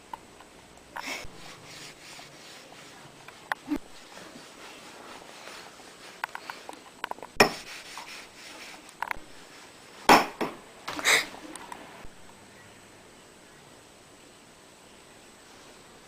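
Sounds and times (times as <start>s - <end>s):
objects being handled: 0.1s - 11.9s.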